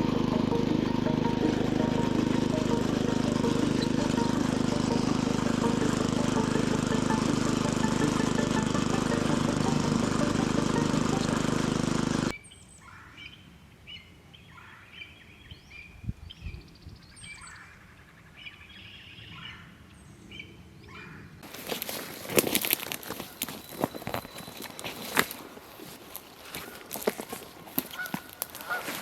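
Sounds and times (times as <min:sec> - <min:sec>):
garden tiller engine running: 0:00.0 - 0:12.3, 0:21.4 - 0:29.0
rustling footsteps: 0:21.4 - 0:29.0.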